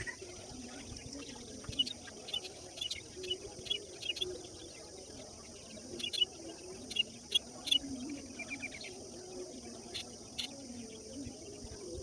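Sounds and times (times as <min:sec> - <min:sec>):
bird chirps: 0:05.4 - 0:09.0.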